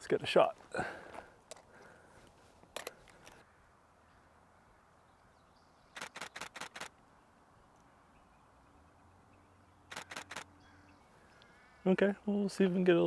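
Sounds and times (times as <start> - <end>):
faint outdoor background: 0.0 - 13.0
camera shutter clicks: 2.8 - 3.2, 5.9 - 7.0, 9.9 - 10.5.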